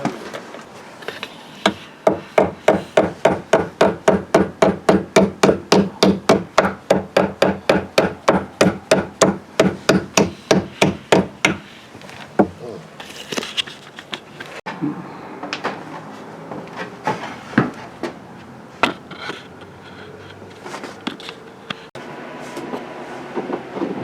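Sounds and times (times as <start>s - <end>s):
hammer striking: 1.6s - 11.7s.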